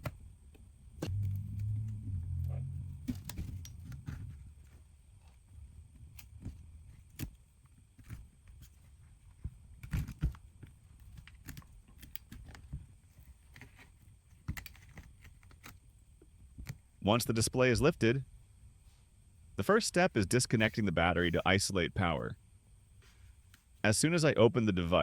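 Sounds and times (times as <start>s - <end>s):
low hum: 0.0s - 9.8s.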